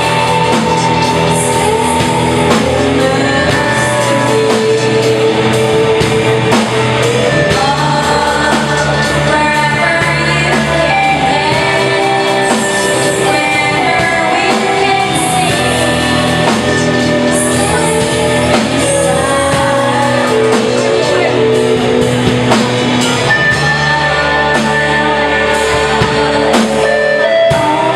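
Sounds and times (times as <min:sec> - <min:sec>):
rock band playing live: 0:00.0 - 0:27.9.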